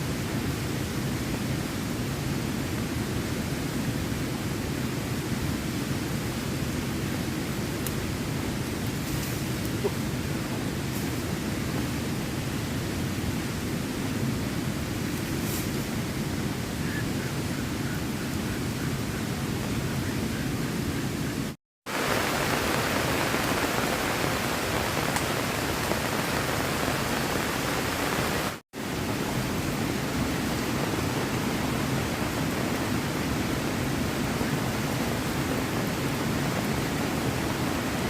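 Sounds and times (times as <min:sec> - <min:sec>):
heavy rain falling: 0:15.8 - 0:38.0.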